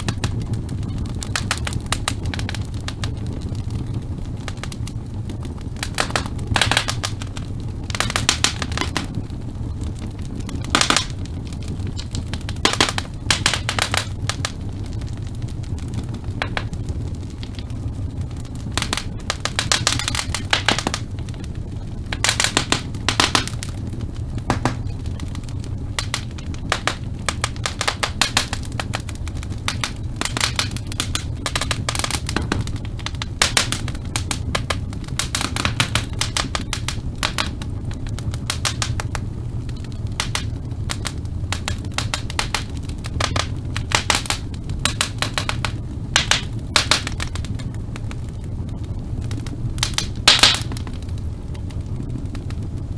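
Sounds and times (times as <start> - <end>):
low rumble of burning fire: 0.0 - 52.9
wood fire crackling: 0.0 - 52.9.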